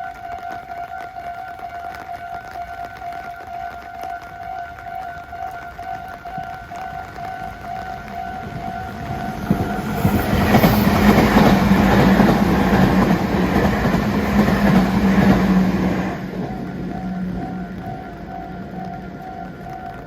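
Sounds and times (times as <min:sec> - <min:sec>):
level crossing alarm ringing: 0:00.0 - 0:20.0
train wheels clattering on rails: 0:05.5 - 0:20.0.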